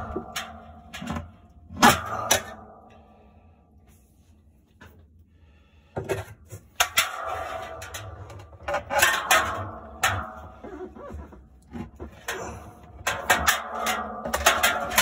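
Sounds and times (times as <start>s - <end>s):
hard objects clattering and clinking: 0.0s - 3.0s, 6.0s - 15.0s.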